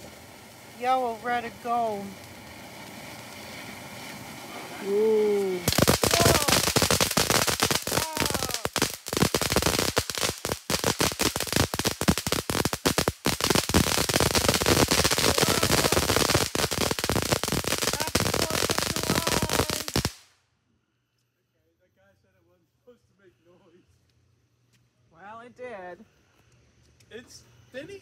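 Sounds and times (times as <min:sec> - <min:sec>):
firework crackling: 0:00.0 - 0:20.5.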